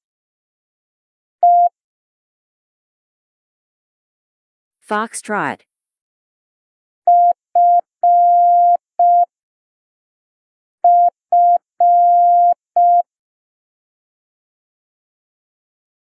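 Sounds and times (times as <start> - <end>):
morse code beeps: 7.1 - 9.3, 10.9 - 13.1.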